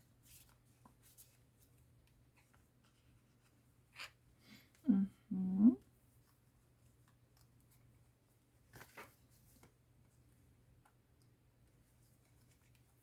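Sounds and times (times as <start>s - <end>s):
person humming: 4.8s - 5.8s
paper rustling: 8.6s - 10.2s.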